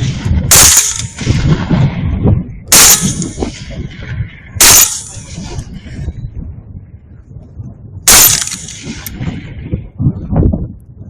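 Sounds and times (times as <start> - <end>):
rifle shots echoing: 0.0 - 1.8, 2.7 - 3.8, 4.6 - 5.7, 8.1 - 9.2.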